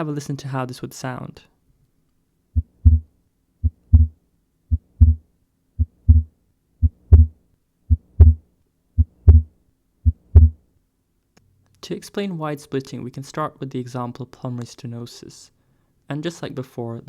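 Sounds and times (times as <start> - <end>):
heartbeat with split second sound: 2.6 - 5.2, 5.8 - 8.4, 9.0 - 10.6.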